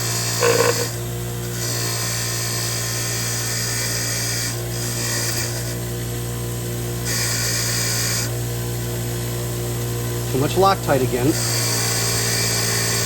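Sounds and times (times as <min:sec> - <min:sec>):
small power tool motor running: 0:00.4 - 0:00.9.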